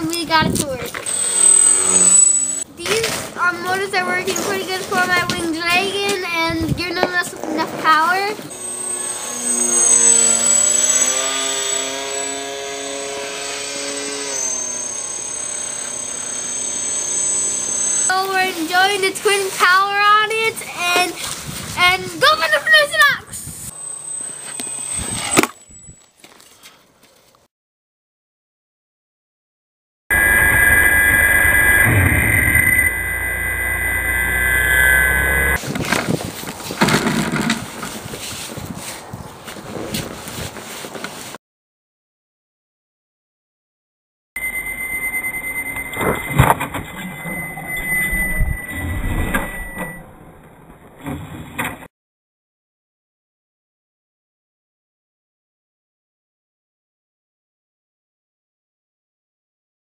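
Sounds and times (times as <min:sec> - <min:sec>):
high electric motor whine: 0:00.9 - 0:02.8, 0:08.5 - 0:18.2, 0:30.1 - 0:35.6, 0:44.4 - 0:50.0
propeller hum: 0:30.1 - 0:35.6
rushing crackling noise: 0:30.1 - 0:35.6.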